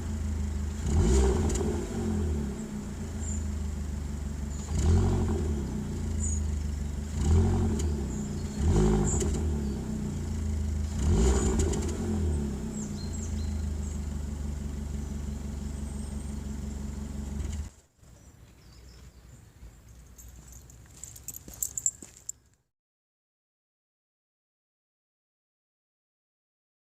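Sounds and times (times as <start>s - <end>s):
car engine idling and revving: 0.0s - 17.8s.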